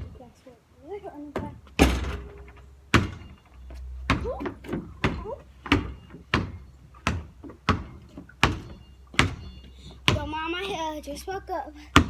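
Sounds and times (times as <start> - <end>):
basketball bouncing on floor: 4.1 - 10.3.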